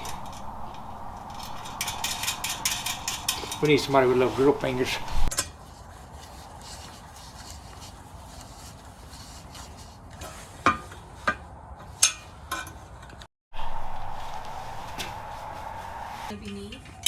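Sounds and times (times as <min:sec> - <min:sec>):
metal parts handling noise: 0:00.0 - 0:03.8
steady hum: 0:00.0 - 0:05.3, 0:13.6 - 0:16.3.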